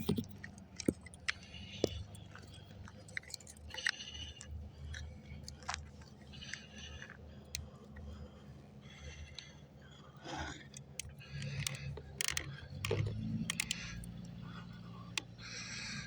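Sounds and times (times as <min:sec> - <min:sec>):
clicks and scrapes in mud: 0:00.0 - 0:08.1
low steady hum: 0:00.0 - 0:16.0.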